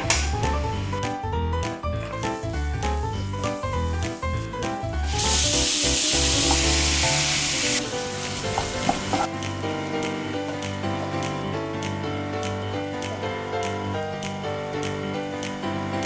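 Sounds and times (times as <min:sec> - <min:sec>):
background music: 0:00.0 - 0:16.0
food sizzling in a frying pan: 0:02.0 - 0:11.5.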